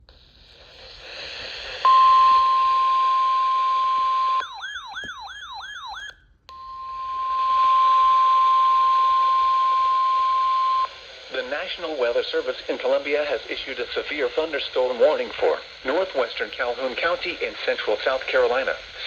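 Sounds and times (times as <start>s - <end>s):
warbling siren-like tone: 4.1s - 6.2s
steady hiss: 10.4s - 19.0s.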